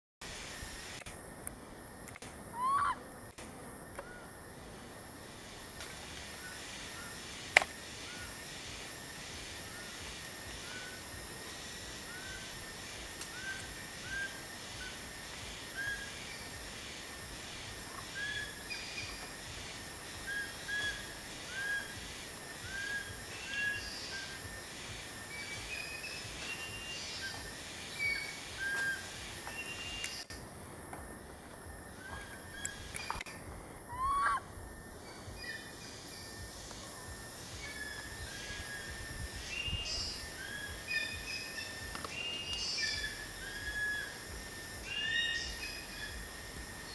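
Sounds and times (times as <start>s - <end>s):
steady hiss: 0.2s - 46.9s
high chirping animal calls: 2.5s - 3.0s, 33.9s - 34.5s.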